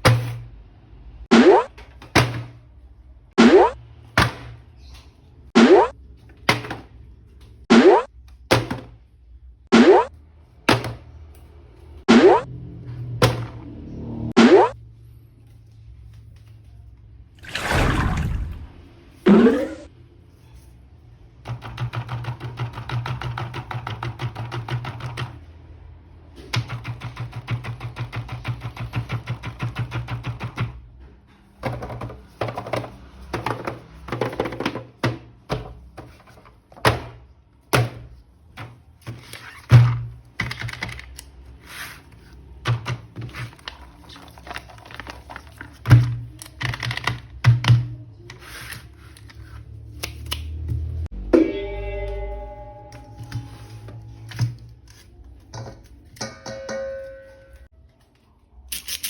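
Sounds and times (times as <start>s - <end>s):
plastic toys and packaging handled: 38.1s - 50.9s, 53.1s - 56.2s.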